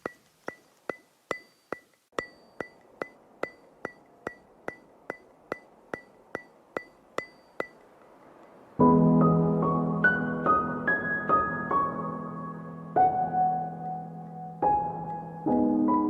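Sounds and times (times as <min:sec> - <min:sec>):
ticking percussion: 0:00.0 - 0:08.8
ambient music: 0:08.8 - 0:16.0.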